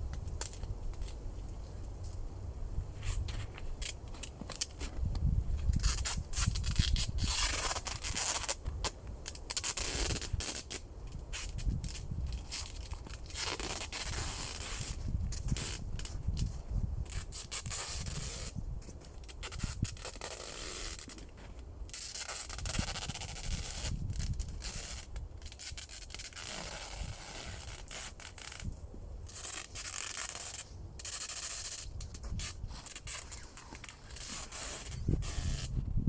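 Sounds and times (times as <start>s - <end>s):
tape pulled off roll: 3.0s - 36.0s.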